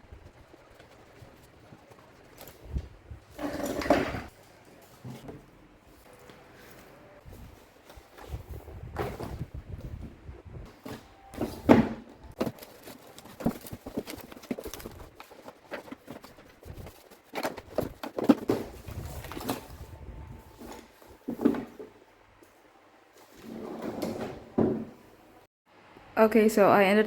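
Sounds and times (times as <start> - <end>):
books knocking on a shelf: 10.7 - 12.6.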